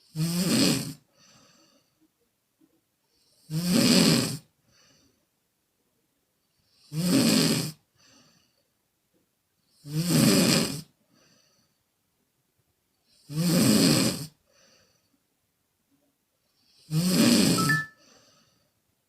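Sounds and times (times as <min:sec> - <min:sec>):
woman snoring: 0:00.0 - 0:01.0, 0:03.4 - 0:04.5, 0:06.9 - 0:07.8, 0:09.8 - 0:10.9, 0:13.2 - 0:14.4, 0:16.8 - 0:17.9
faint breath: 0:01.1 - 0:02.2, 0:04.6 - 0:05.3, 0:07.9 - 0:08.8, 0:11.0 - 0:11.9, 0:14.4 - 0:15.2, 0:17.9 - 0:18.8.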